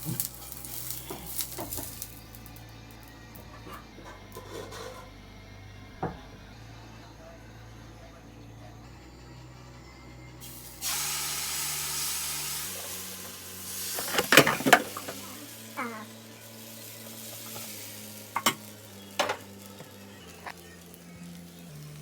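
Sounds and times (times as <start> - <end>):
food sizzling in hot oil: 0.0 - 2.6, 10.4 - 22.0
utensil scraping a pan: 3.5 - 5.1, 13.8 - 15.2.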